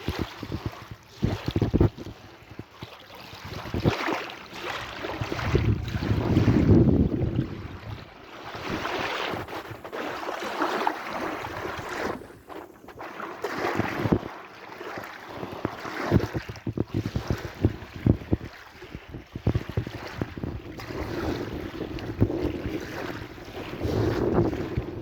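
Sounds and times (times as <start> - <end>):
sea waves washing in: 3.8 - 25.0.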